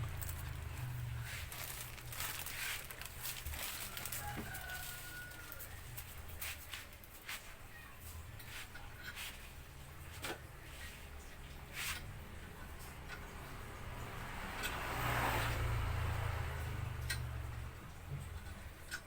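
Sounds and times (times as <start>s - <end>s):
distant rooster crowing: 3.5s - 6.2s.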